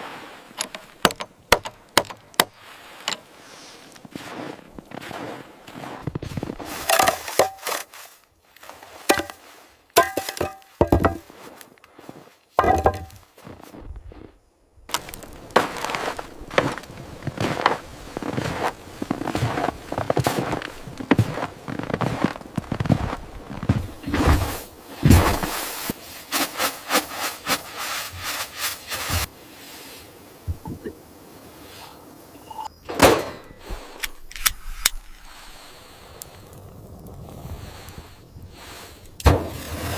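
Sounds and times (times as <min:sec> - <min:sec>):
chopping blows on wood: 0:00.6 - 0:02.6, 0:09.1 - 0:09.4.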